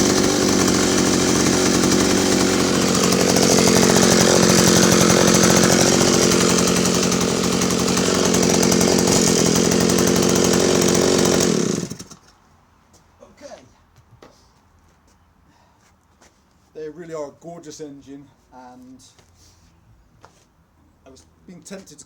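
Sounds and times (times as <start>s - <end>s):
chainsaw engine running: 0.0s - 12.2s.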